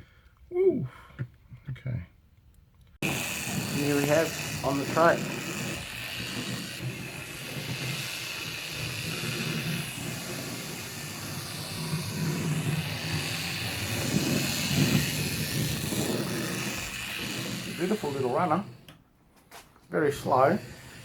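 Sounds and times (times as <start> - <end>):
wheels running on rails: 3.0 - 18.9
model train motor whirring: 3.0 - 19.0, 19.9 - 21.0.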